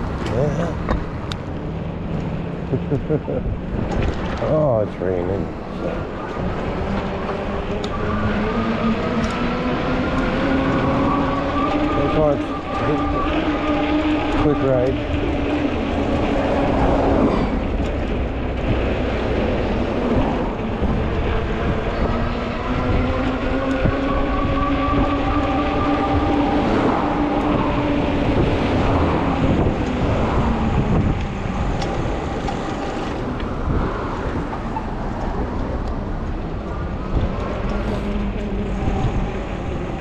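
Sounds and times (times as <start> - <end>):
steady rushing noise: 0.0 - 9.6, 26.0 - 40.0
electric motor whining: 34.3 - 37.8.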